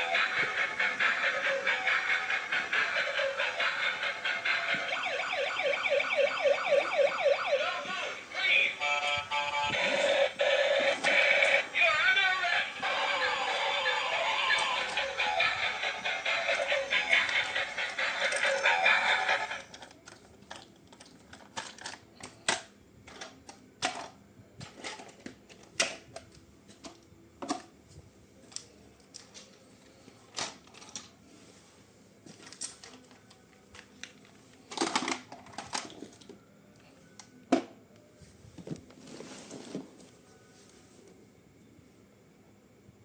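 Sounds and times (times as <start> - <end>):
rustling and clattering: 38.5 - 40.2.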